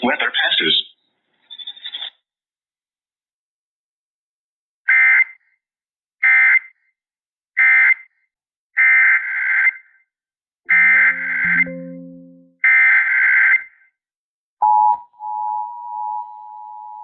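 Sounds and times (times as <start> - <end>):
low tone: 10.7 - 12.6.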